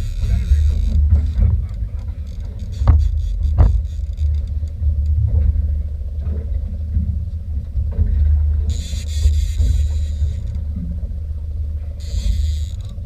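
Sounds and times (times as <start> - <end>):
boat engine rumble: 0.0 - 13.0
sharp knocks: 2.8 - 4.2.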